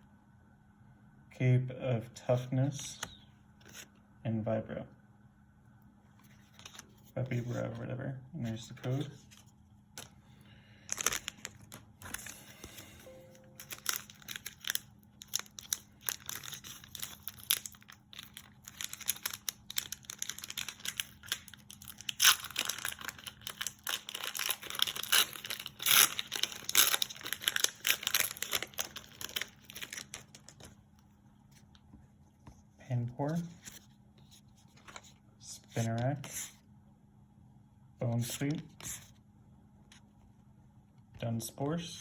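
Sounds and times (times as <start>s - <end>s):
foil wrapper crinkling and tearing: 10.7s - 30.8s.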